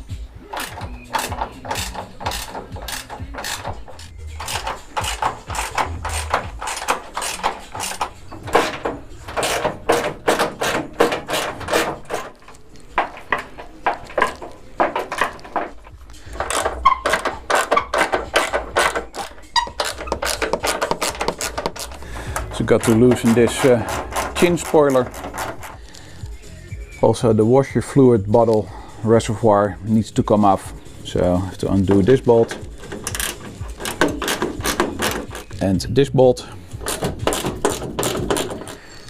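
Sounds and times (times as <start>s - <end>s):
ratchet wrench clicking: 0.4s - 12.4s, 13.0s - 26.0s, 31.6s - 35.6s, 36.7s - 39.0s.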